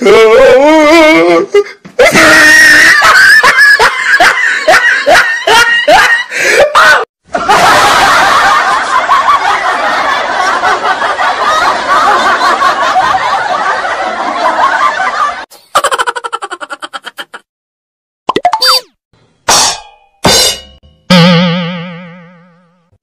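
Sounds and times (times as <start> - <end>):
crowd laughing: 2.1 - 17.5.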